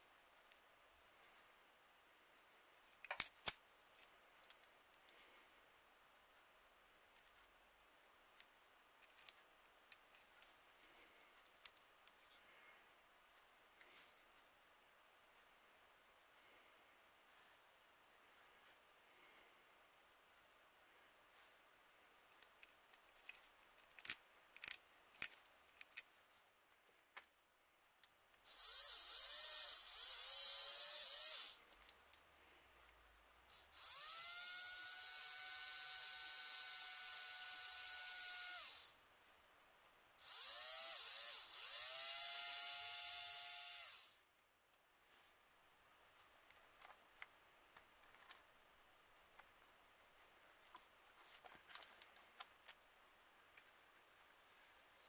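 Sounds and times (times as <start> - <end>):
rotary tool whining: 28.5 - 31.6, 33.5 - 39.0, 40.2 - 44.2.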